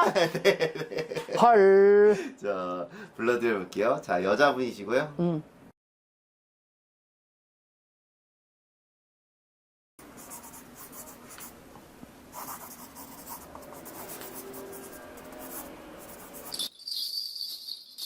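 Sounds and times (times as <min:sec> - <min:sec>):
pen scratching on paper: 0:10.2 - 0:11.6, 0:12.4 - 0:16.6
hand bells jingling: 0:16.5 - 0:18.0.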